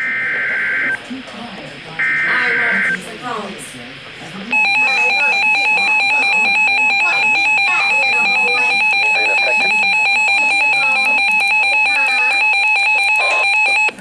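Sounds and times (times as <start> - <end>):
electronic two-tone alarm: 0.0 - 1.0, 2.0 - 3.0, 4.5 - 14.0
faint voices: 0.0 - 14.0.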